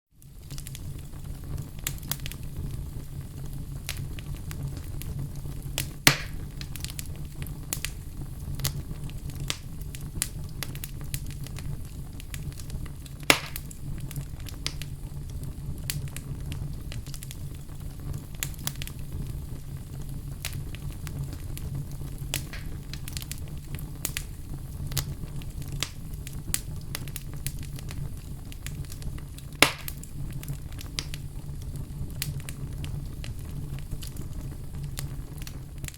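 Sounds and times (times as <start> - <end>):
fireplace fire crackling: 0.1 - 35.9
low rumble of flame: 0.1 - 35.9
sharp loud pops of fire: 3.6 - 15.0, 20.4 - 31.5.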